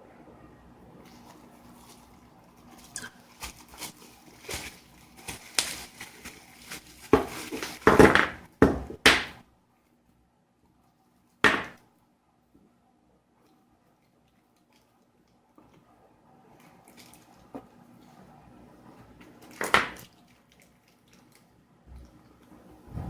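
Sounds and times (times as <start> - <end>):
packaging rustling and crinkling: 1.1 - 8.5, 16.6 - 17.5.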